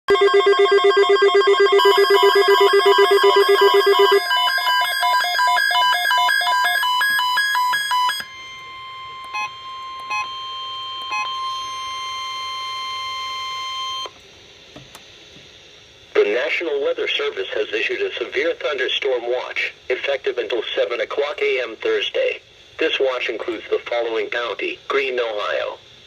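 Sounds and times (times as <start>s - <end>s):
electronic alarm beeping: 0.1s - 14.2s
steady single-pitch alarm tone: 0.1s - 14.2s.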